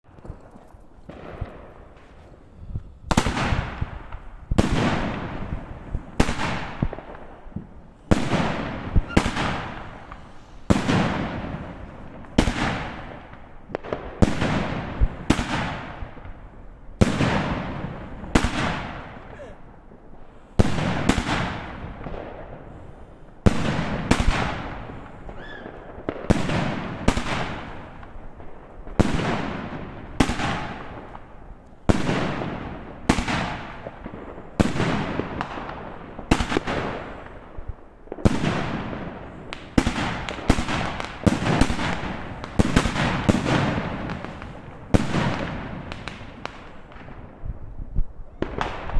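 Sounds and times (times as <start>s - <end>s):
firework bangs with crackling: 0.1s - 48.9s.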